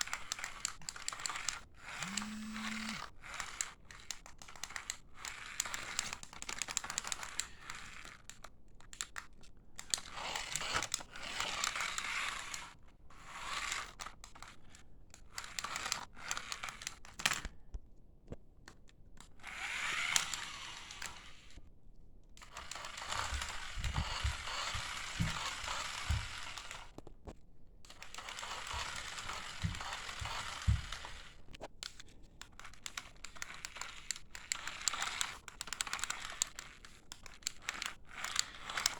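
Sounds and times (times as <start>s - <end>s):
clicks: 2.0s - 3.0s.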